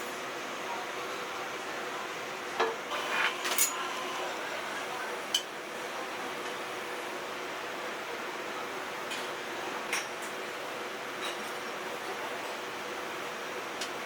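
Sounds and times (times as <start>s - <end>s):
room noise hum: 0.0s - 14.0s
utensils clinking against dishes: 2.6s - 4.1s, 11.2s - 11.7s.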